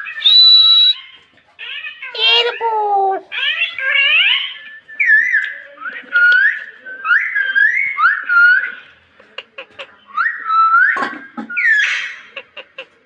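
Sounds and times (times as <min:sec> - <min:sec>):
parrot whistling swooping notes: 0:00.0 - 0:01.1.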